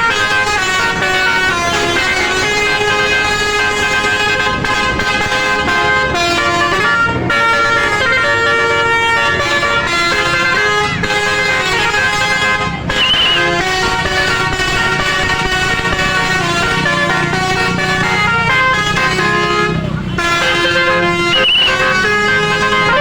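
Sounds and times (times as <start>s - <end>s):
multi-tone musical bus horn: 0.0s - 23.0s.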